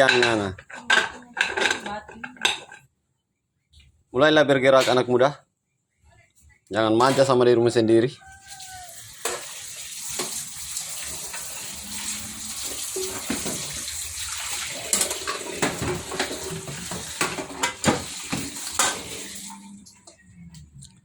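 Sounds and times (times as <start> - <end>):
frying in oil sizzling: 8.2 - 19.8.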